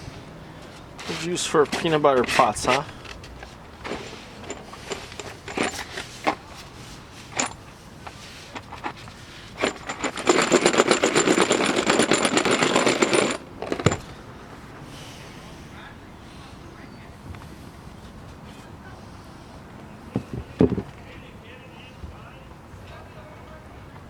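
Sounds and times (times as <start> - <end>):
metal tools clinking: 1.0 - 14.2
fast mechanical rattle: 8.5 - 14.2.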